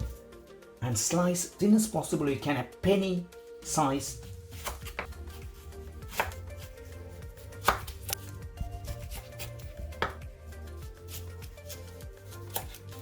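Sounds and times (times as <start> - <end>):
knife slicing on a board: 4.6 - 10.3, 11.0 - 13.0.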